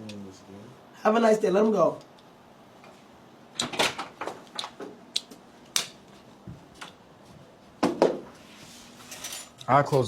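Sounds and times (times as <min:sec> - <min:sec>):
sharp irregular clicks and taps: 0:04.6 - 0:06.0.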